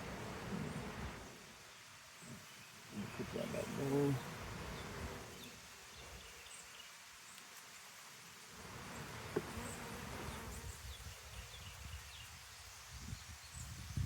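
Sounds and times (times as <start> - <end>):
bees buzzing: 8.6 - 10.9.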